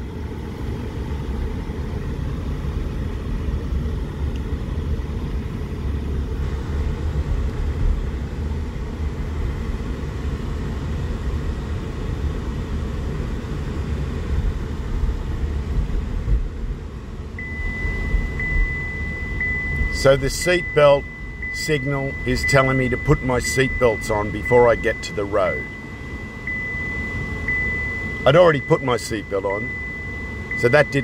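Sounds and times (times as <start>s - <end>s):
car engine and road noise: 0.0s - 31.0s
high electronic tone: 17.4s - 31.0s.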